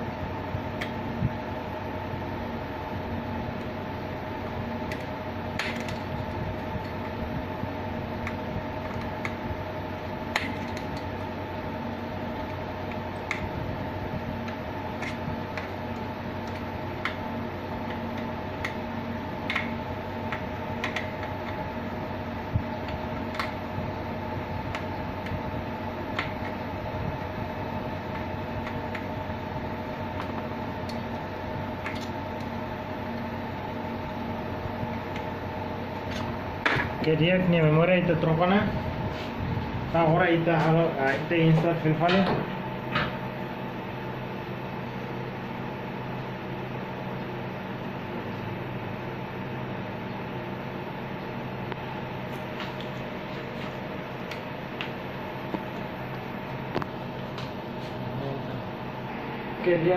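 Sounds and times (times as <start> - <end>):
cooling fans humming: 0.0 - 59.9.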